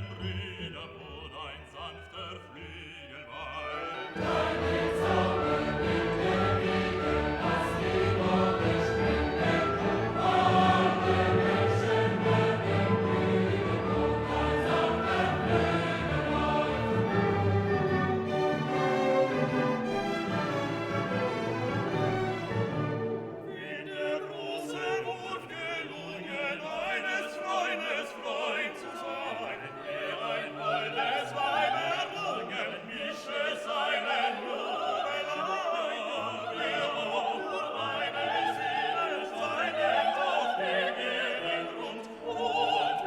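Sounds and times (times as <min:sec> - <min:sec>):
operatic singing voice: 0:00.0 - 0:20.8, 0:23.4 - 0:43.0
orchestra playing: 0:00.0 - 0:24.0.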